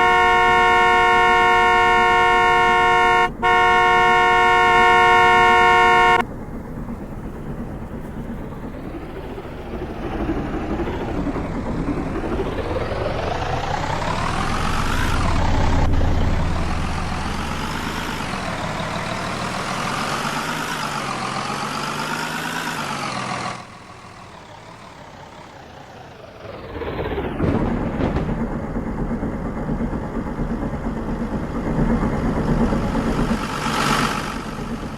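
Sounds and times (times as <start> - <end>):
horn-like tone: 0.0 - 6.2
vehicle engine accelerating: 0.0 - 34.9.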